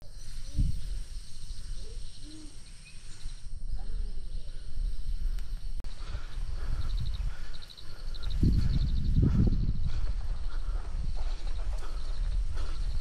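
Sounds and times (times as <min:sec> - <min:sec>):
insects chirping: 0:00.0 - 0:13.0
steady low rumble: 0:03.3 - 0:13.0.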